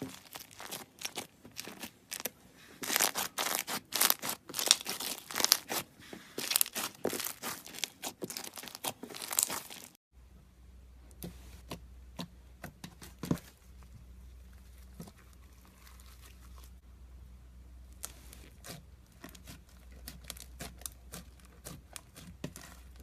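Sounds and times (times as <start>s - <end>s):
slime crackling and popping: 0.0s - 5.8s, 6.4s - 10.0s.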